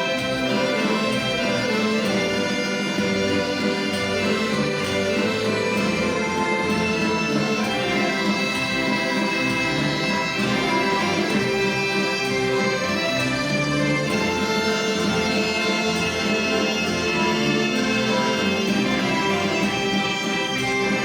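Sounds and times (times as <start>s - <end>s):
instrumental waltz music: 0.0s - 21.0s.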